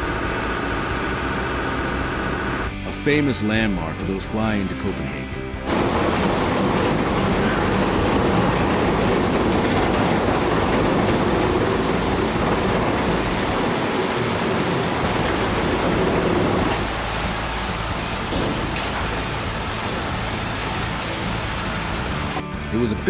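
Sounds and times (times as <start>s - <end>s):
loud rumbling clattering: 5.7s - 22.4s.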